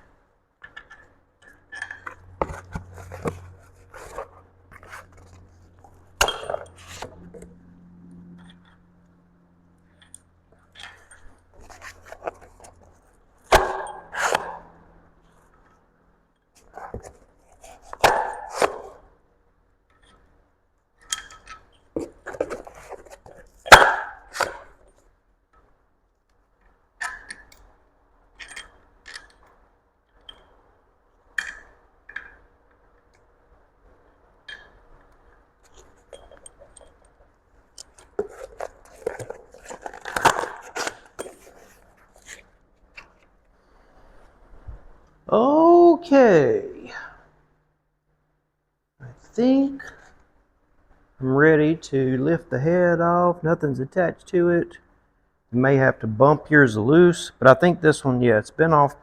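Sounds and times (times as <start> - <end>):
bolts and tools clinking on metal: 0.6 - 7.5, 9.9 - 12.9, 19.9 - 25.7, 26.6 - 33.3, 34.4 - 41.5.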